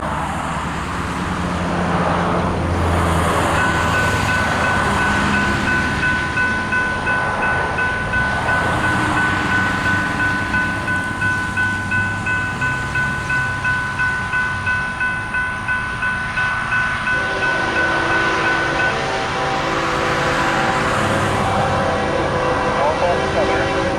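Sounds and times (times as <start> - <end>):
freight train rumble: 0.0 - 23.9
railroad crossing bell ringing: 1.1 - 23.9
locomotive air horn: 17.1 - 23.9.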